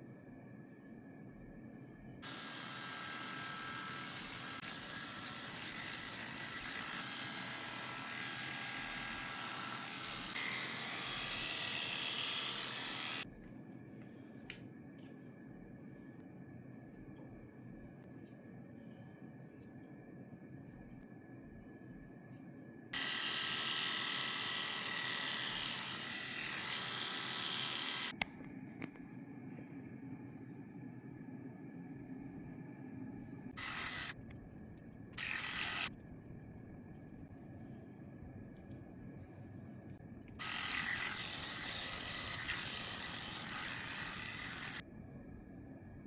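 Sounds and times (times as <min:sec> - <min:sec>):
electric hair clippers whining: 0:02.2 - 0:13.2, 0:23.0 - 0:28.2, 0:33.6 - 0:34.2, 0:35.2 - 0:35.9, 0:40.4 - 0:44.8.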